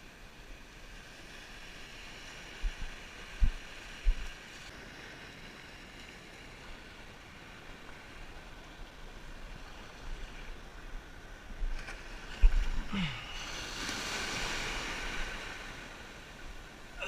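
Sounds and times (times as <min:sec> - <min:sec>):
sea waves: 0:00.0 - 0:17.0
wind: 0:00.0 - 0:17.0.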